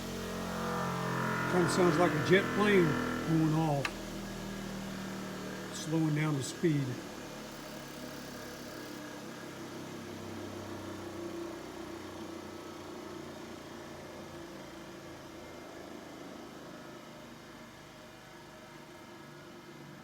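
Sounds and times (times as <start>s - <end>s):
bench grinder coasting down: 0.0s - 6.4s.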